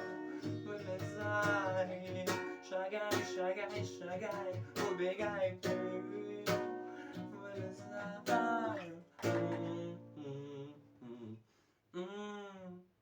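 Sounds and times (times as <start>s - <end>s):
acoustic guitar strumming: 0.0s - 10.3s.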